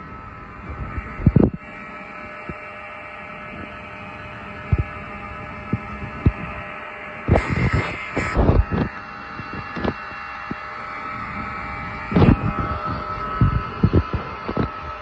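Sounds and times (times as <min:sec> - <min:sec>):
fire alarm buzzing: 0:00.0 - 0:09.9.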